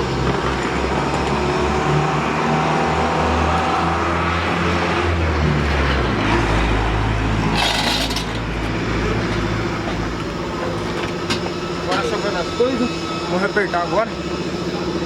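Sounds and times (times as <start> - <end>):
diesel truck engine idling: 8.2 - 15.0.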